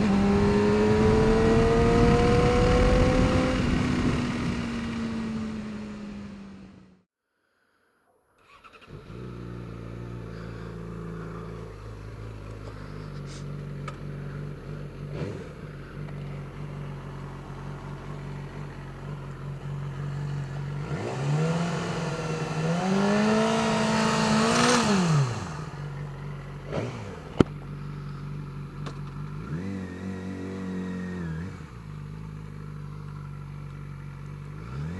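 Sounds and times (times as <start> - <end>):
motorcycle engine idling and revving: 0.0 - 7.1, 8.5 - 34.9.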